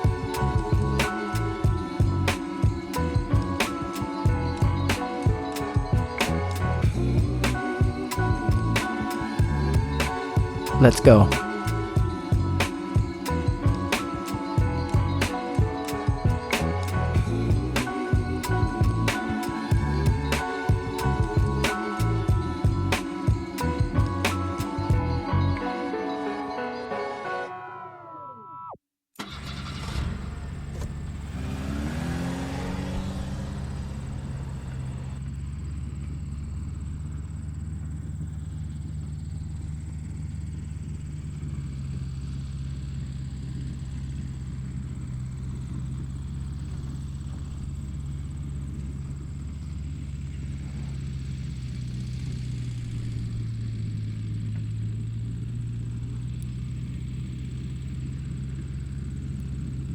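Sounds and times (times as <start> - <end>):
engine starting and revving: 29.2 - 59.9.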